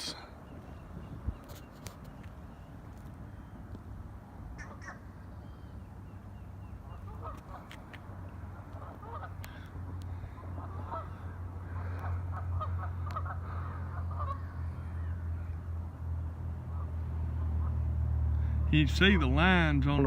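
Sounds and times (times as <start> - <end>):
low steady rumble: 2.4 - 20.0
geese honking: 4.6 - 5.1, 6.9 - 7.7, 8.5 - 15.5.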